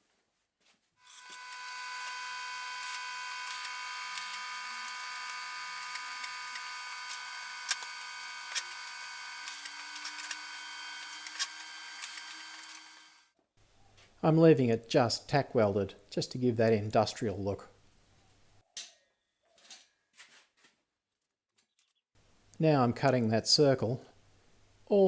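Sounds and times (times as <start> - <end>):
arc welding hiss and crackle: 1.0 - 13.2.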